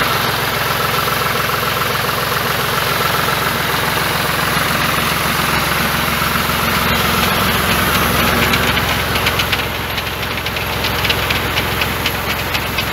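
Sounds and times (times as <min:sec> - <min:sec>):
tractor engine running: 0:00.0 - 0:12.9
fast sharp clicks: 0:06.9 - 0:12.9.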